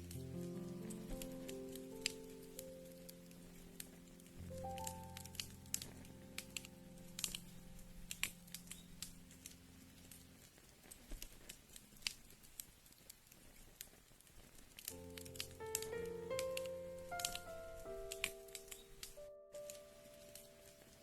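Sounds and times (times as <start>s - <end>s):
soft sustained music notes: 0.0s - 10.7s, 15.0s - 21.0s
rain hiss: 0.0s - 12.8s, 14.8s - 21.0s
wood fire crackling: 0.0s - 21.0s.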